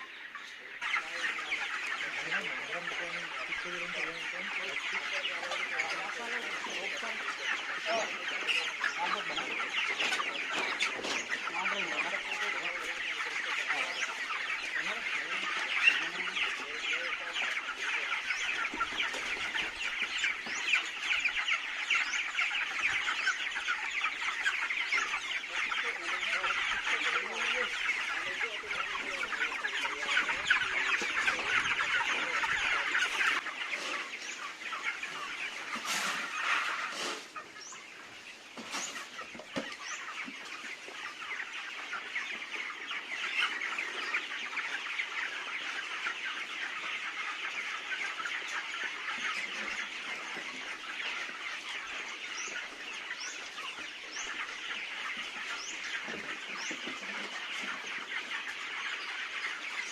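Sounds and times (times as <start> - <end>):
chickens clucking: 0.0 - 59.9.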